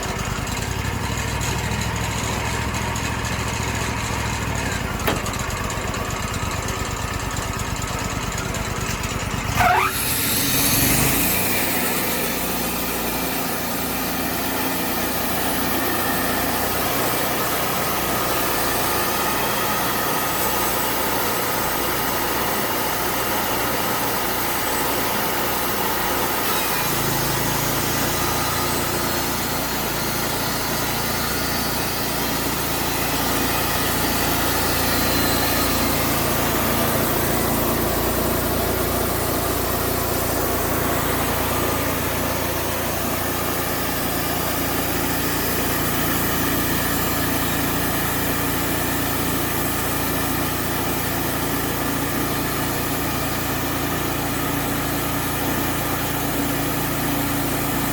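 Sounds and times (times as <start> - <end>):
sawmill engine running: 0.0 - 57.9
band saw cutting log: 9.2 - 57.9.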